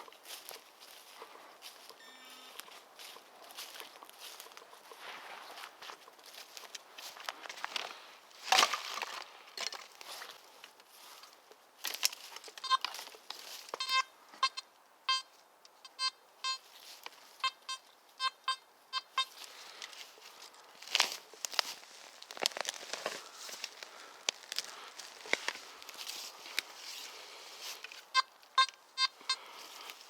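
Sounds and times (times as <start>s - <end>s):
metal detector beeps: 2.0s - 2.8s, 12.6s - 12.9s, 13.7s - 16.6s, 17.4s - 19.4s, 28.1s - 29.4s
crunching leaf litter: 19.4s - 28.0s.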